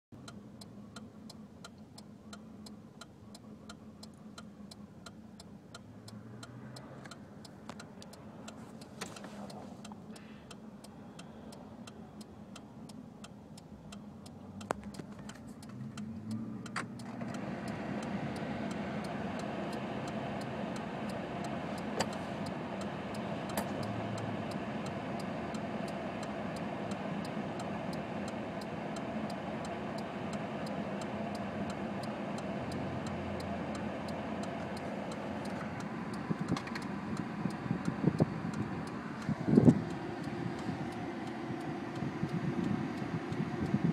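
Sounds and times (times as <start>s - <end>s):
engine ticking: 0.1s - 43.9s
truck engine rough idle: 14.9s - 43.9s.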